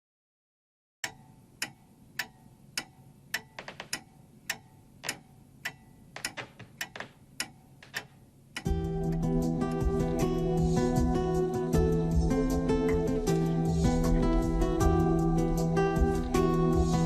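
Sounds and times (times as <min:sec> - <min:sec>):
clock ticking: 0:01.0 - 0:10.3
music with strummed guitar: 0:08.7 - 0:17.0.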